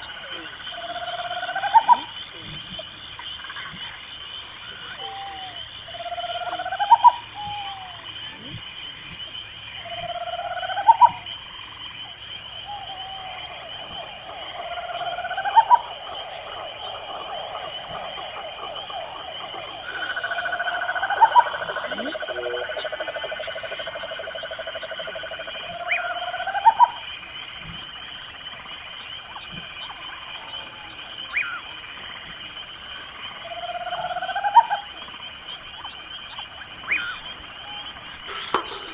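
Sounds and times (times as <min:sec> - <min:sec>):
frog call rising: 0:00.0 - 0:02.2, 0:04.9 - 0:08.0, 0:09.8 - 0:11.3, 0:12.6 - 0:27.0
crickets chirring: 0:00.0 - 0:38.9.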